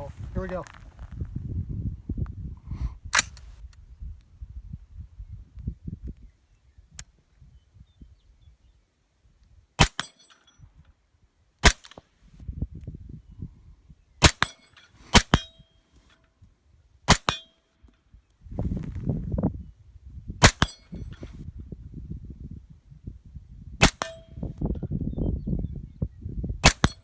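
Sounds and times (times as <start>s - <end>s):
suppressed rifle shots: 9.8s - 10.3s, 14.2s - 15.6s, 20.4s - 21.0s, 23.8s - 24.3s, 26.6s - 27.0s.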